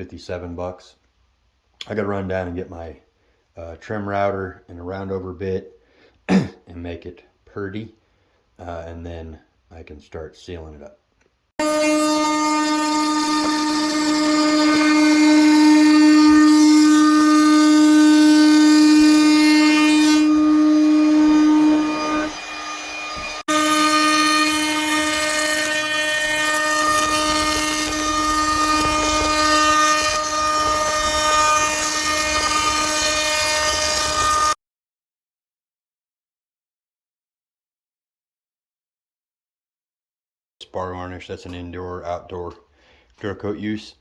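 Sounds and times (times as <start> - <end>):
trim router high whine: 11.6 - 34.6.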